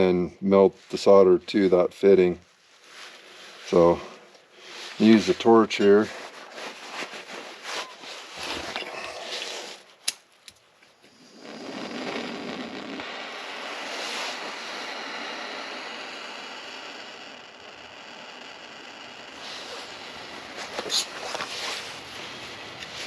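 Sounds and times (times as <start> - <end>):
gas torch ignition click: 10.0 - 10.6
gas torch flame hissing: 11.0 - 23.0.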